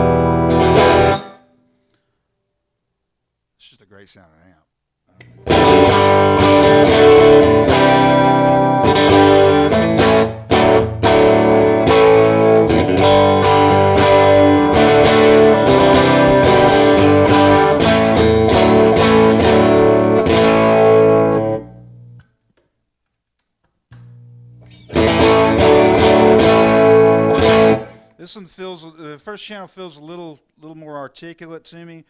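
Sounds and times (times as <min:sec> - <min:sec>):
electric guitar chords strummed: 0:00.0 - 0:01.5, 0:05.2 - 0:22.2, 0:24.0 - 0:28.1.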